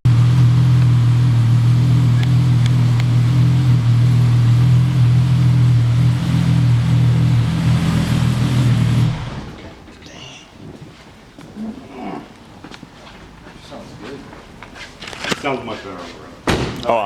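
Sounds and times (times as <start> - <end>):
car engine droning: 0.0 - 10.0.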